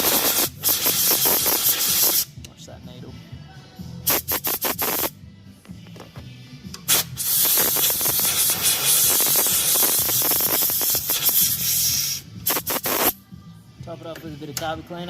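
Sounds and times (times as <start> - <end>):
pressurised spray hissing: 0.0 - 2.3, 6.9 - 13.2.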